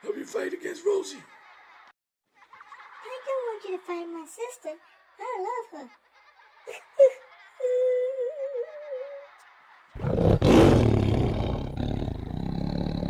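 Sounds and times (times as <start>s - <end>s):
loud deep roar: 10.0s - 13.0s.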